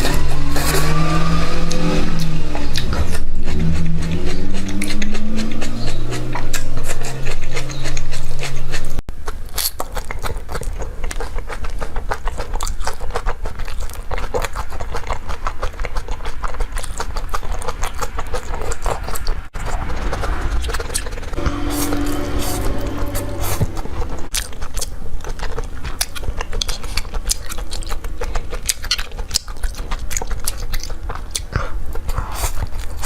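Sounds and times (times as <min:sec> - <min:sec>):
loud low drone sliding in pitch: 0:00.0 - 0:02.9, 0:19.6 - 0:24.3
wet chewing smacking and slurping: 0:00.0 - 0:21.4, 0:23.2 - 0:33.0.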